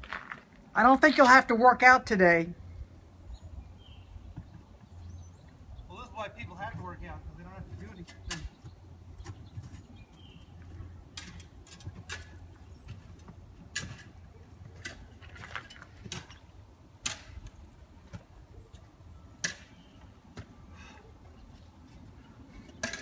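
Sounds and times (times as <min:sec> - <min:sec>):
footsteps crunching on ice: 0:00.0 - 0:00.7.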